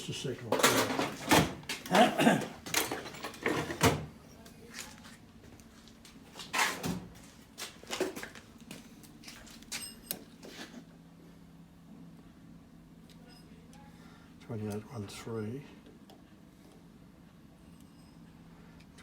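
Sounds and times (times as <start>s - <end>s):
clatter on workbench: 0.5s - 1.8s.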